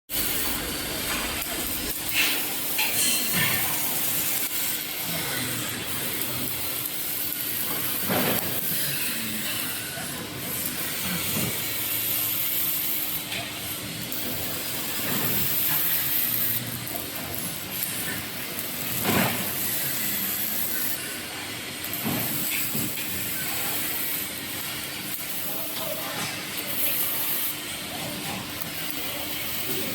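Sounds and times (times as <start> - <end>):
welding arc hissing: 0.1 - 29.9.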